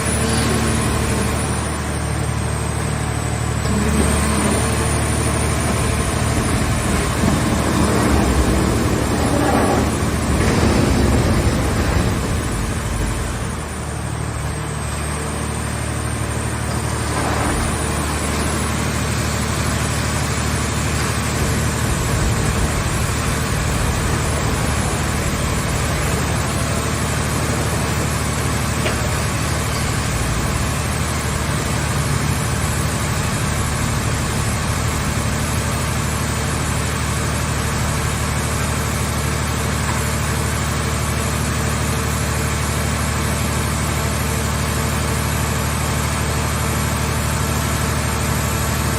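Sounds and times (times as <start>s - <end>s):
baler engine droning: 0.0s - 35.2s.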